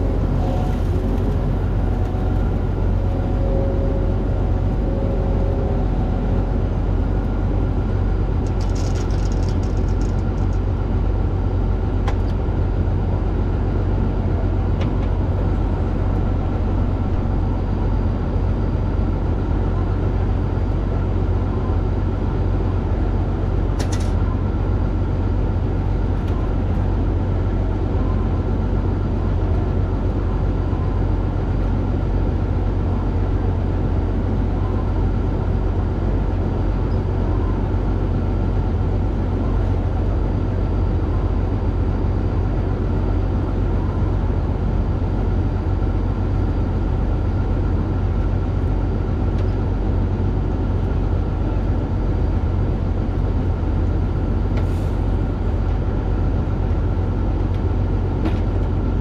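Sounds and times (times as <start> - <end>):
high-pitched whine: 0.0 - 8.7
combine harvester droning: 0.0 - 59.0.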